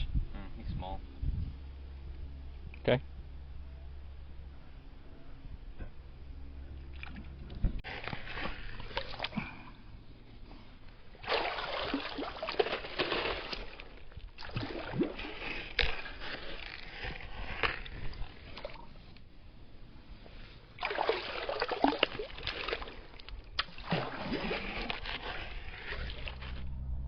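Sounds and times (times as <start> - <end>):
creek water sloshing and splashing: 6.8 - 9.8, 11.1 - 19.0, 20.7 - 26.6.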